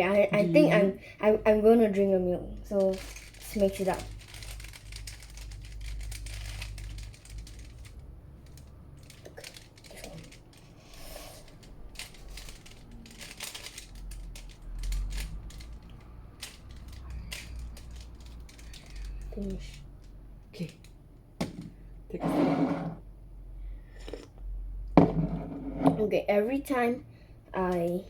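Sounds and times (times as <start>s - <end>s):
puzzle cube plastic clicks: 2.8s - 19.8s.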